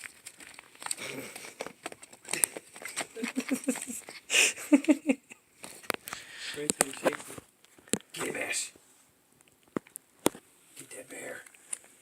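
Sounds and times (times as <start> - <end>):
scratchy rustling: 0.0 - 4.8, 5.6 - 7.5.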